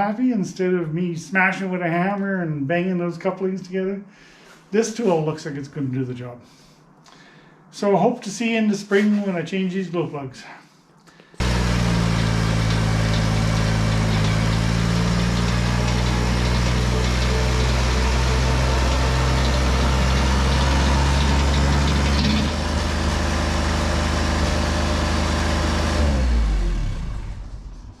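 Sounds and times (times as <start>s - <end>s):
diesel engine running: 11.4s - 28.0s.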